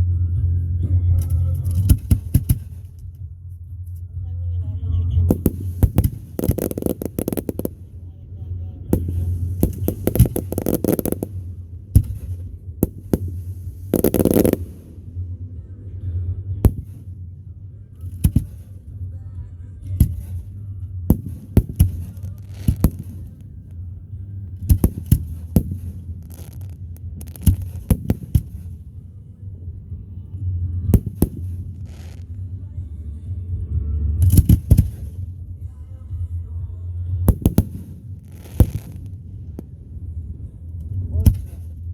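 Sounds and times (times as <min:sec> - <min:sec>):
low rumble: 0:00.0 - 0:41.9
fireworks bangs: 0:01.6 - 0:03.2, 0:05.3 - 0:08.1, 0:08.8 - 0:15.3, 0:16.6 - 0:19.0, 0:19.9 - 0:30.2, 0:30.8 - 0:32.5, 0:34.2 - 0:35.3, 0:37.3 - 0:41.8
fireworks crackling: 0:01.6 - 0:03.2, 0:05.3 - 0:08.1, 0:08.9 - 0:15.3, 0:16.6 - 0:19.1, 0:19.9 - 0:30.2, 0:30.9 - 0:32.5, 0:34.2 - 0:35.4, 0:37.3 - 0:40.0, 0:40.8 - 0:41.9.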